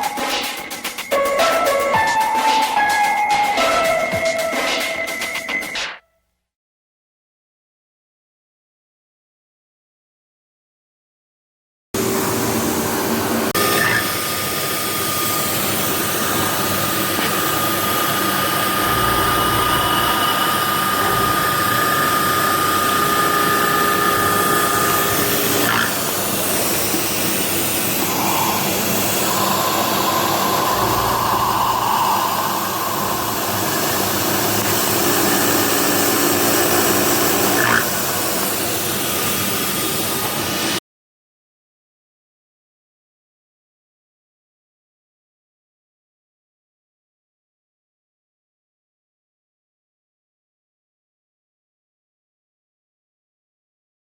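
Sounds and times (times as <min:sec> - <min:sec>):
milling machine running: 0:12.0 - 0:40.8
thin high whine: 0:12.0 - 0:40.8.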